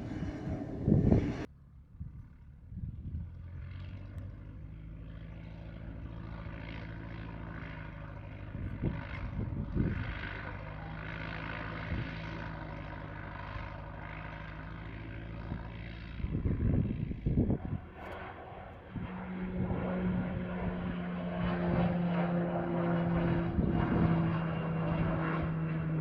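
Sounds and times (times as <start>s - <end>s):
loud rumbling burst: 0.0s - 1.5s
turboprop propeller drone: 0.0s - 26.0s.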